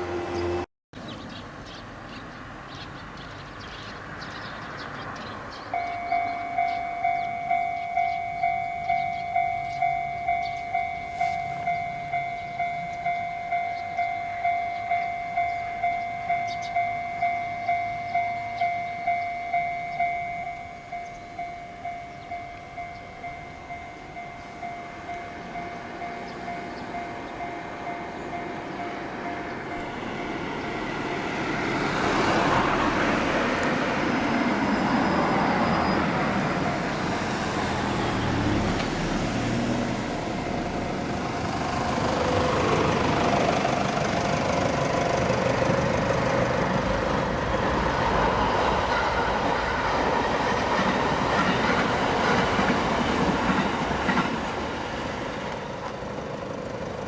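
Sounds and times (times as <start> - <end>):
train passing: 0.0 - 0.7, 2.4 - 57.0
level crossing warning bell: 5.6 - 49.5.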